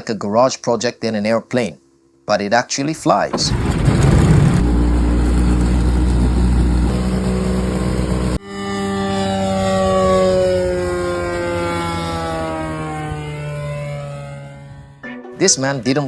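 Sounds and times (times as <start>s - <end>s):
propeller airplane engine: 3.2s - 15.0s
airplane passing by: 3.2s - 15.9s.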